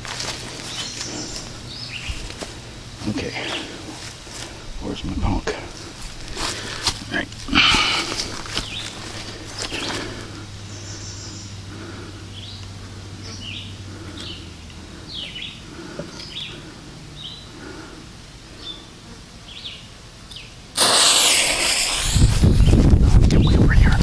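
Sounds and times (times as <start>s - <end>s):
small birds chirping: 0.0s - 20.6s
firework hissing spray: 20.7s - 22.8s
low rumbling: 20.8s - 24.0s.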